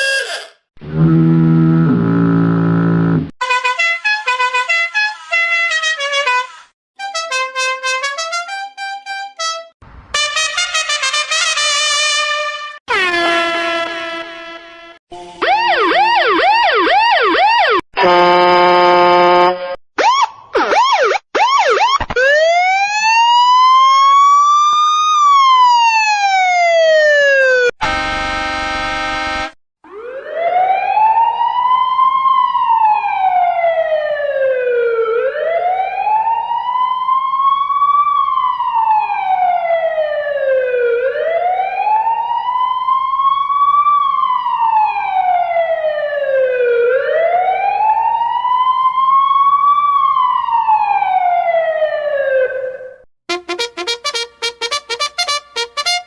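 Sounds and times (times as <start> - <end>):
steady horn blast: 0.0 - 15.0, 18.0 - 19.8, 27.8 - 29.6, 53.3 - 56.0
yelping siren sweeps: 15.1 - 17.8, 25.2 - 27.7
warbling siren: 15.1 - 18.2, 20.0 - 28.0, 29.8 - 56.0
rising and falling wail siren: 15.1 - 56.0.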